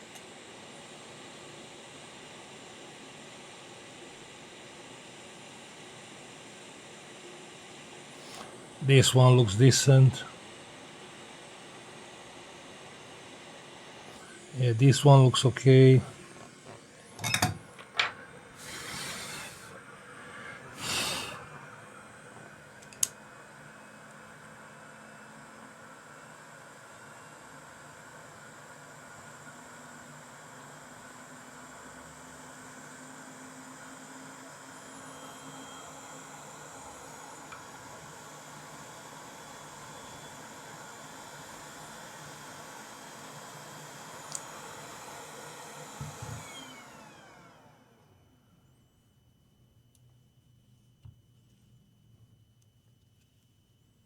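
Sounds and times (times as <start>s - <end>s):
small fan hissing and humming: 0.0s - 54.0s
short hissing: 8.2s - 8.6s, 18.5s - 19.8s, 20.4s - 21.6s.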